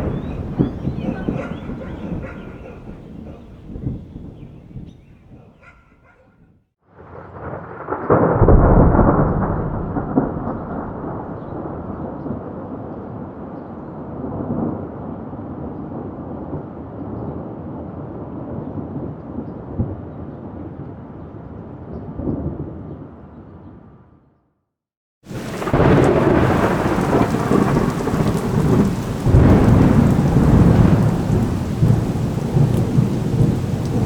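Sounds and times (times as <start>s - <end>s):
thunder clap and rumble: 0.0s - 6.2s, 7.1s - 13.4s, 25.3s - 34.0s.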